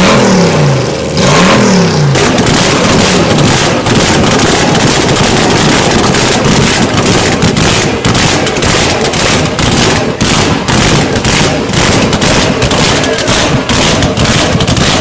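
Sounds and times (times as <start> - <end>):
loud car engine and exhaust: 0.0 - 15.0.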